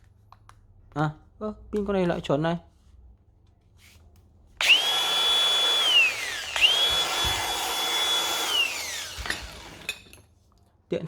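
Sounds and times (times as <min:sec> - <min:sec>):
angle grinder whining: 0:04.6 - 0:10.1.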